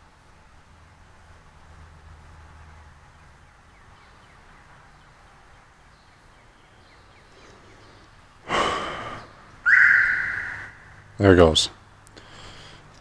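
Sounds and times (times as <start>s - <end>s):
faint quick chirps: 9.7s - 10.8s.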